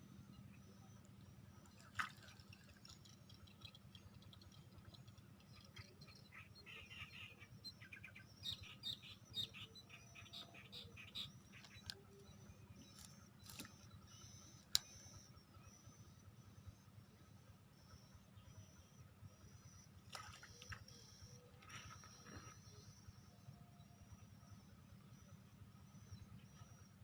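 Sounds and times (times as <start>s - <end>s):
small birds chirping: 0.0s - 16.2s
faint low hum: 0.0s - 27.0s.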